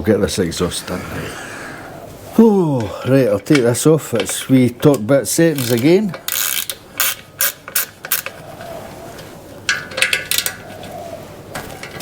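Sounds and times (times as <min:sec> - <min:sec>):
metal tool clicking: 0:03.5 - 0:08.3.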